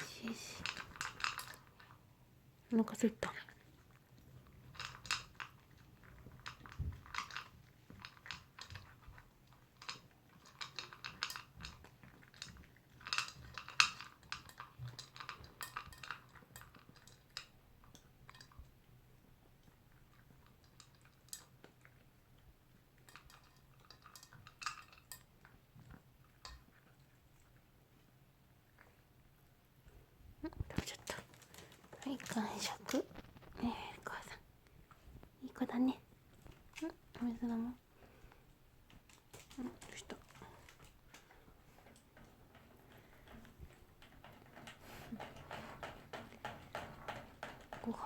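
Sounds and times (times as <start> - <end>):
dog chewing food: 3.5 - 27.8.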